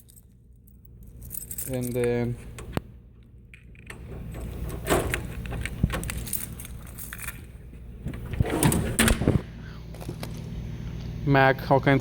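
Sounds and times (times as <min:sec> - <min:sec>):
steady low hum: 0:00.0 - 0:12.0
toolbox drawers sliding: 0:08.1 - 0:09.4.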